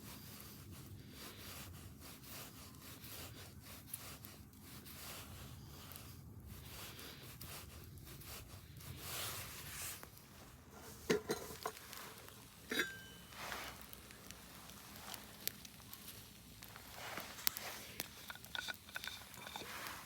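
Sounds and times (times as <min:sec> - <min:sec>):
rustling and handling noises: 0:00.0 - 0:20.0.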